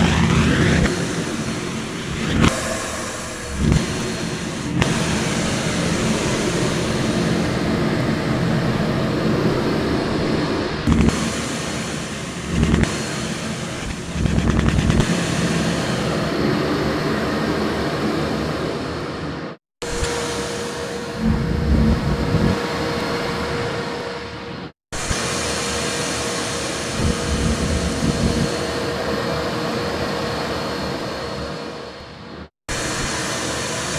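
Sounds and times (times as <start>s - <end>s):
shop vac running: 0.0s - 18.8s, 25.0s - 31.8s.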